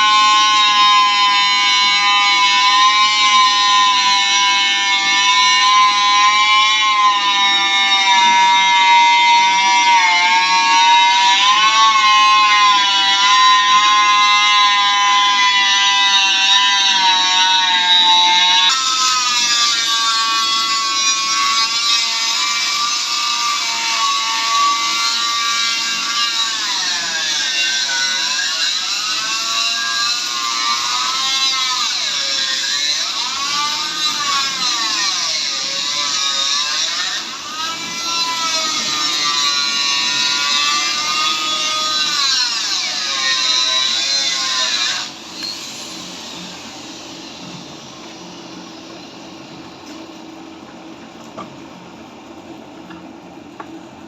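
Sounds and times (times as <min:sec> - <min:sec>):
electric grinder grinding steel: 0:00.0 - 0:50.2.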